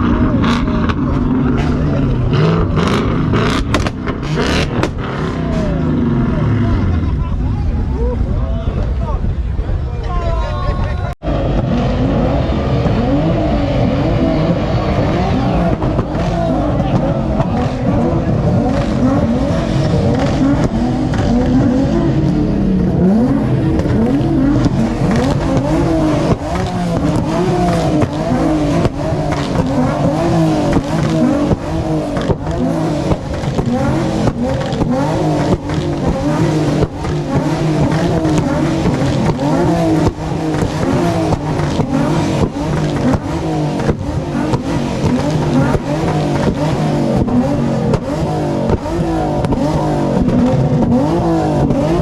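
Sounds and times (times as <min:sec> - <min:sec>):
car engine revving in blips: 0:00.0 - 0:10.2, 0:10.8 - 0:52.0.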